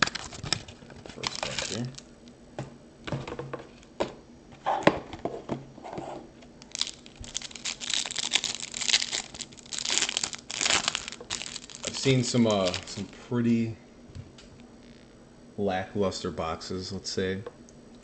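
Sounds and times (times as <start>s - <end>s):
plastic wrapper tearing: 0.0s - 2.1s, 6.6s - 13.2s
plastic wrapping crinkling: 0.0s - 2.1s, 6.6s - 13.2s.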